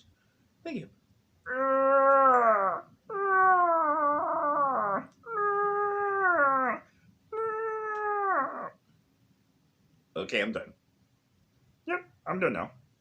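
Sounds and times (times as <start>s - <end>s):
person making long vocal noises: 1.5s - 8.8s.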